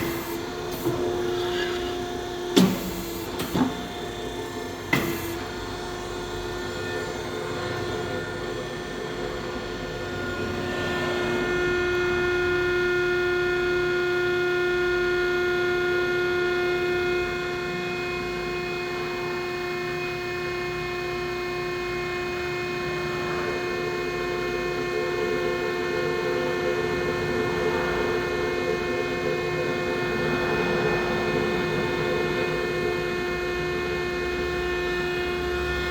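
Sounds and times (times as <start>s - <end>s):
dicing machine motor humming: 0.0s - 9.0s, 22.0s - 35.9s.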